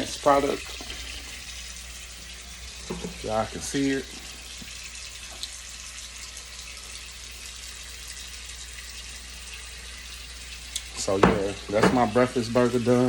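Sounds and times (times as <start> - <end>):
water running from faucet: 0.0 - 13.0.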